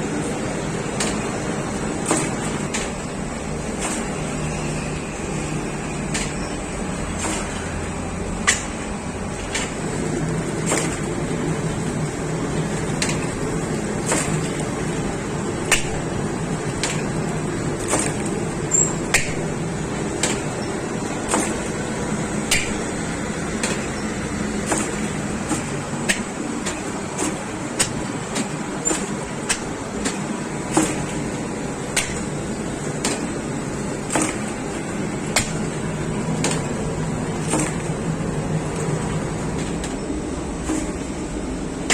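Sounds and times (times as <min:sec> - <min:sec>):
bakery machinery humming: 0:00.0 - 0:41.9
machine clicking: 0:07.1 - 0:40.0.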